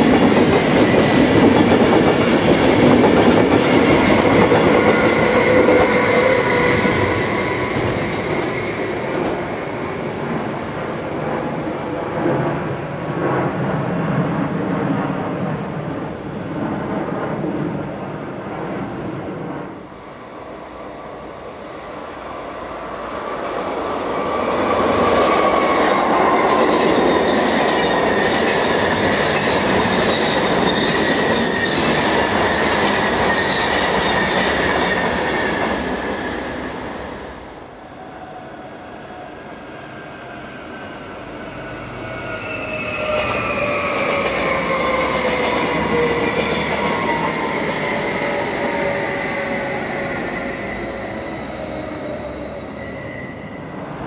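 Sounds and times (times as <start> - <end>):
electric train passing: 0.0 - 54.0
high train whine: 0.0 - 54.0.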